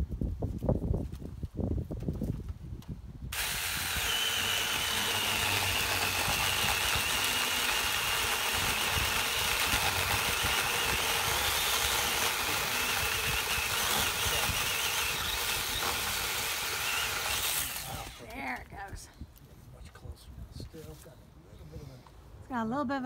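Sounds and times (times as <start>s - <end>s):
power tool whining: 3.3s - 18.6s.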